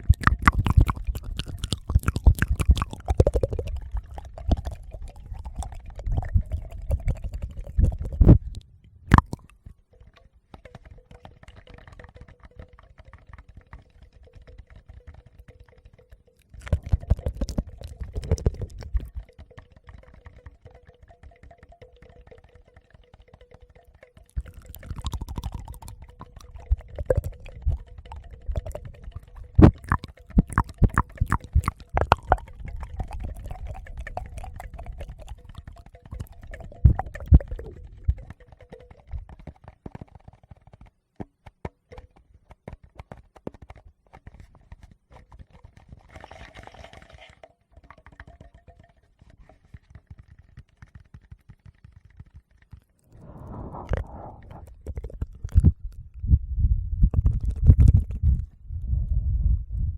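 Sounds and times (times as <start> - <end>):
fingers tapping on microphones: 10.5 - 45.6, 47.8 - 53.0, 57.0 - 58.6
low rumble: 53.1 - 54.6, 55.7 - 59.9
short breathy rush: 53.1 - 54.8.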